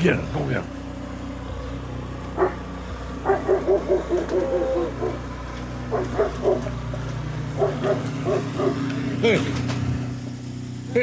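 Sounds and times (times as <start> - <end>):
dog barking: 2.3 - 6.8, 7.5 - 8.9.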